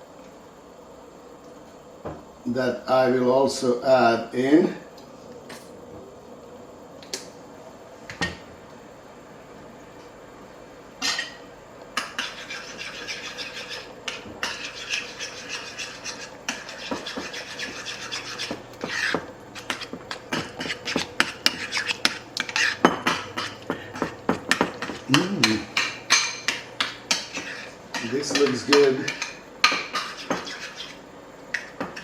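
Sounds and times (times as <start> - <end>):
utensil stirring in a bowl: 12.0 - 32.0.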